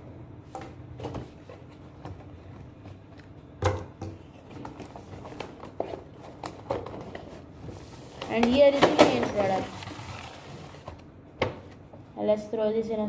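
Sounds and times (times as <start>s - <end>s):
cardboard and plastic packaging rustling: 4.3s - 11.0s.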